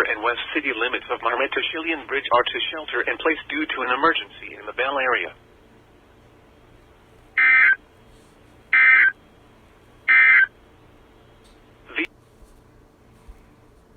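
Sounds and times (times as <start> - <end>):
digital data tone bursts: 10.1 - 10.5.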